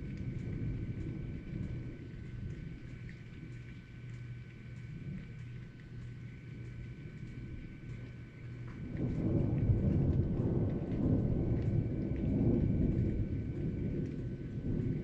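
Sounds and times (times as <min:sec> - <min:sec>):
thunder rumbling: 0:00.0 - 0:03.2, 0:06.6 - 0:15.0
steady rain: 0:00.0 - 0:15.0.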